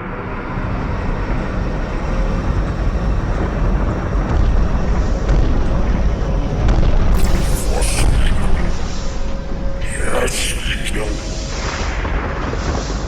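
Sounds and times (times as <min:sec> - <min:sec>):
low dense rumbling: 0:05.5 - 0:12.5.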